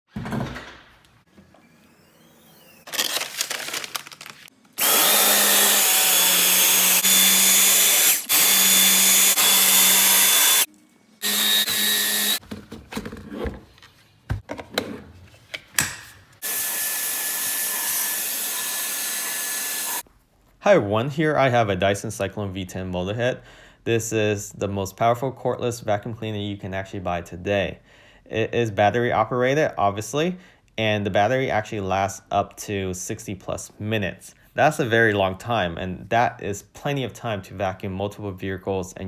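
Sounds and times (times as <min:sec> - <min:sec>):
vacuum cleaner running: 0:04.8 - 0:12.4.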